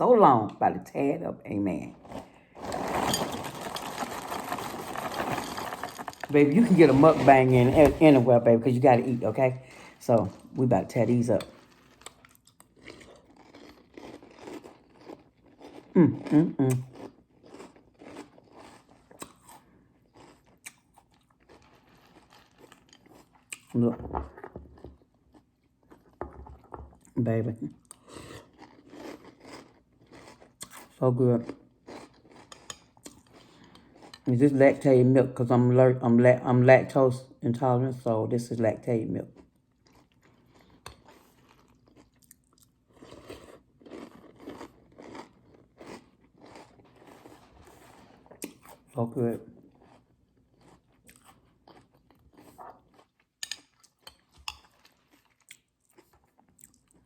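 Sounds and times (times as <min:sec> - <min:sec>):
chewing crunchy cereal: 0:01.9 - 0:08.4, 0:09.0 - 0:34.4, 0:39.2 - 0:57.0.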